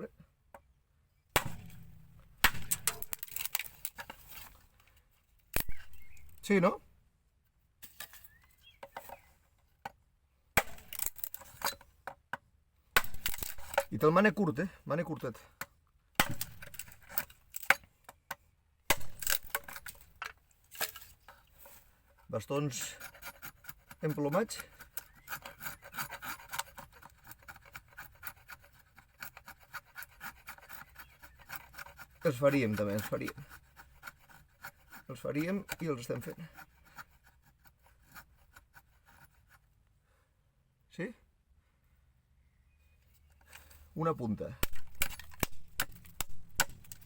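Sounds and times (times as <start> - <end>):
axe-hammer striking wood: 1.3 - 3.6, 10.6 - 11.3, 12.9 - 14.0, 16.2 - 17.8, 18.9 - 20.0, 44.6 - 47.0
hatchet scraping wooden stick: 1.4 - 6.8, 10.6 - 12.2, 13.0 - 39.7, 44.6 - 47.0.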